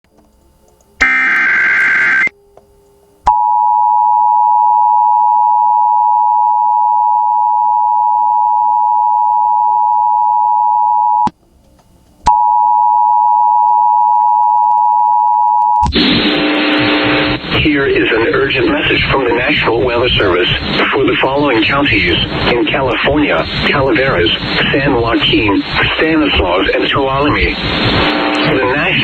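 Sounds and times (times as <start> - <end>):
digital header data: 1.0 - 2.3, 15.9 - 29.0
loud two-tone beep: 1.0 - 2.3.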